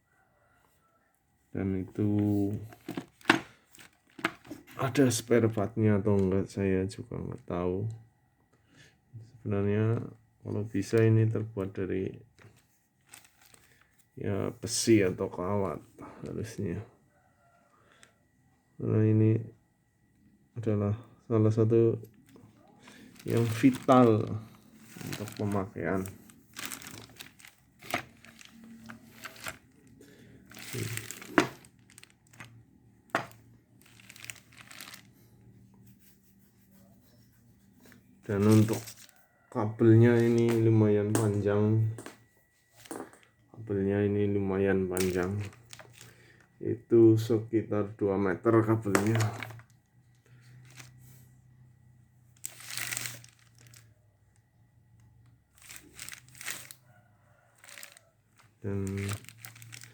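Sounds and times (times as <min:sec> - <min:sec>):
jigsaw handling rustle: 0:02.2 - 0:05.2, 0:12.4 - 0:14.2, 0:22.0 - 0:35.3, 0:37.8 - 0:39.3, 0:40.0 - 0:40.7, 0:45.0 - 0:46.4, 0:48.9 - 0:49.7, 0:50.3 - 0:51.2, 0:52.4 - 0:53.9, 0:55.5 - 0:59.9.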